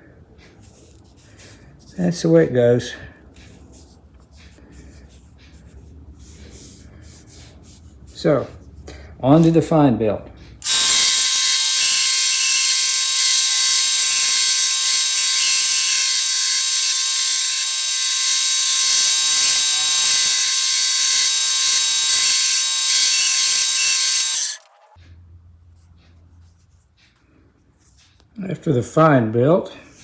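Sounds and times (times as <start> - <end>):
belt sander grinding metal: 10.6 - 24.7.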